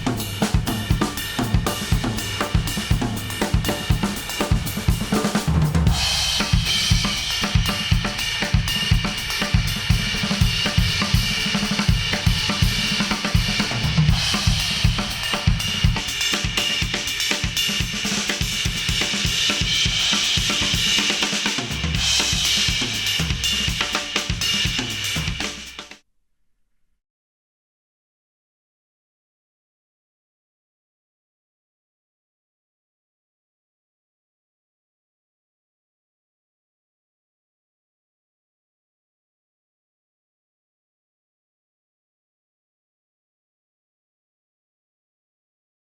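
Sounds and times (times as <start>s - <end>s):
song with drum kit: 0.0s - 26.0s.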